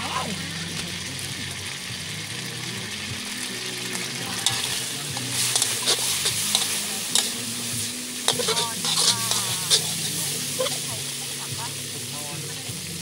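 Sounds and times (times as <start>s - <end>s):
vegetables sizzling in a pan: 0.0s - 13.0s
spatula scraping a pan: 4.4s - 11.6s.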